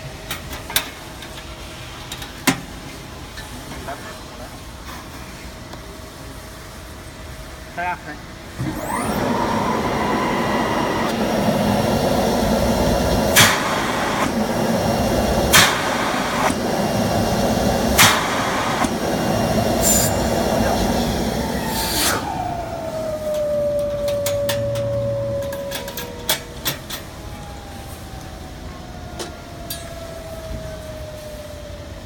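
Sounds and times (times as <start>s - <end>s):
industrial vacuum cleaner running: 8.4s - 32.0s
sharp reverse-air bursts: 8.6s - 28.2s
motor winding down whine: 8.6s - 32.0s.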